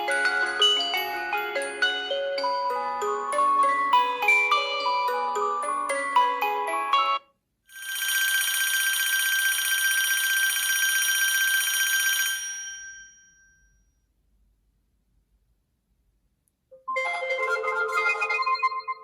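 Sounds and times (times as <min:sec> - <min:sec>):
chiming mallet-like melody: 0:00.0 - 0:07.2
trilling electronic telephone ring: 0:07.0 - 0:13.9.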